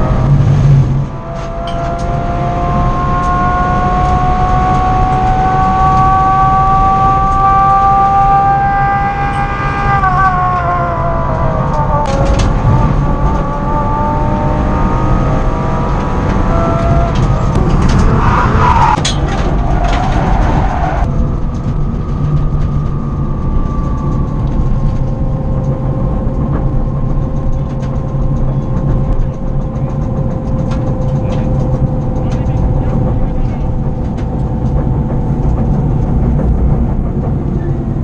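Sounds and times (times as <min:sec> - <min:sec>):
electric motor whine: 0:00.0 - 0:19.0
rolling noise rumble: 0:00.0 - 0:38.0.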